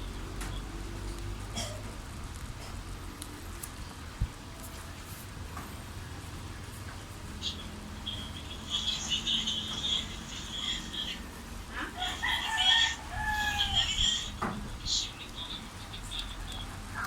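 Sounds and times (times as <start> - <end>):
rooster crowing: 11.8 - 14.4.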